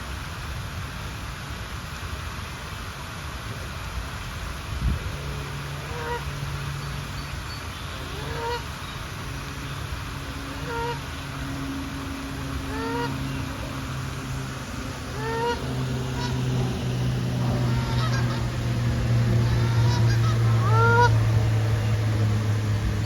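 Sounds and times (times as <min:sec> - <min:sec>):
low steady hum: 0:00.0 - 0:23.0
geese honking: 0:05.9 - 0:06.2, 0:08.0 - 0:08.7, 0:10.5 - 0:11.1, 0:12.6 - 0:13.8, 0:15.1 - 0:21.3.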